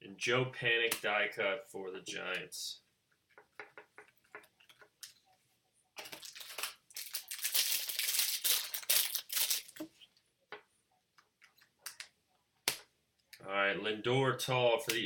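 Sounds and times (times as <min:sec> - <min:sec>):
plastic packaging crinkling: 0:06.0 - 0:09.9.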